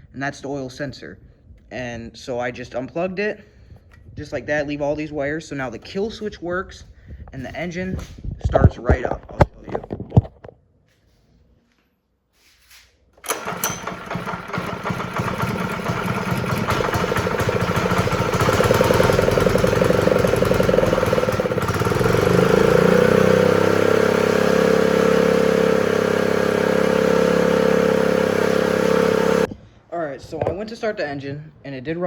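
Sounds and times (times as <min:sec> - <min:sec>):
small engine running: 0:13.2 - 0:29.5.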